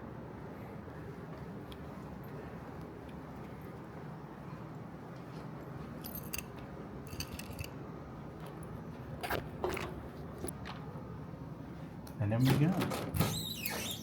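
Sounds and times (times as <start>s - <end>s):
keys jangling: 6.0s - 6.5s, 7.1s - 7.8s.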